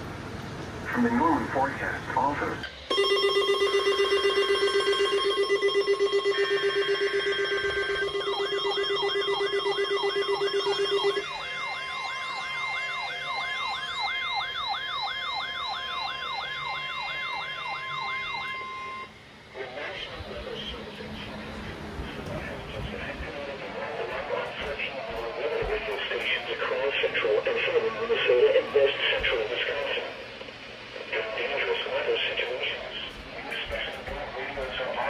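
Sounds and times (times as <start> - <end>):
steady warning alarm tone: 0.9 - 35.0
upward sweeping siren alert: 2.9 - 19.2.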